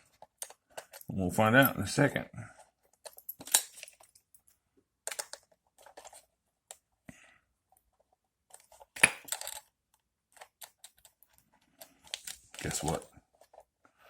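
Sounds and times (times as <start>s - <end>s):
small plastic and metal parts clicking: 5.0s - 6.2s.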